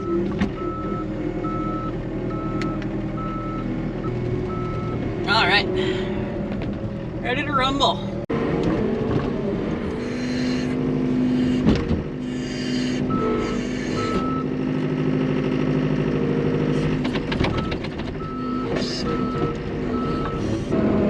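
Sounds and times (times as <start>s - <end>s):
backup alarm beeping: 0.0s - 5.0s, 10.0s - 10.7s, 12.3s - 14.5s, 17.5s - 20.6s
diesel engine running: 0.0s - 21.0s.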